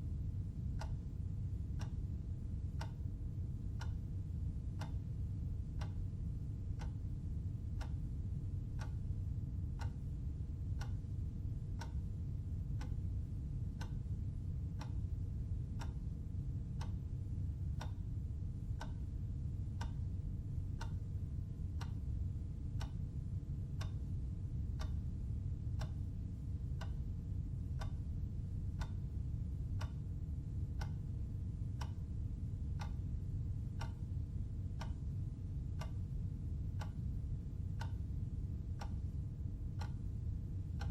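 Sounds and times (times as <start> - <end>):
constant low rumble: 0.0 - 40.9
clock ticking: 2.8 - 3.0, 3.8 - 4.0, 5.8 - 6.0, 6.7 - 7.0, 7.8 - 8.0, 8.8 - 9.0, 9.8 - 10.1, 10.8 - 11.0, 11.8 - 12.1, 12.8 - 13.0, 13.7 - 14.0, 14.7 - 15.0, 15.8 - 16.0, 16.8 - 17.0, 17.8 - 18.0, 18.8 - 19.0, 19.8 - 20.1, 20.7 - 21.1, 21.7 - 22.0, 22.8 - 23.0, 23.8 - 24.0, 24.8 - 25.0, 25.8 - 26.0, 26.8 - 27.1, 27.8 - 28.1, 28.8 - 29.0, 29.8 - 30.0, 30.8 - 31.0, 31.8 - 32.0, 32.8 - 33.1, 33.8 - 34.1, 34.8 - 35.2, 35.8 - 36.1, 36.8 - 37.2, 37.8 - 38.0, 38.8 - 39.1, 39.8 - 40.0.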